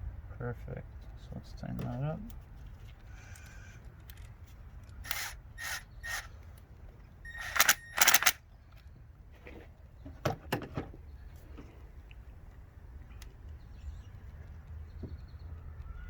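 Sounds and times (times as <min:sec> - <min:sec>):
loud rasping bursts: 0:05.0 - 0:06.4.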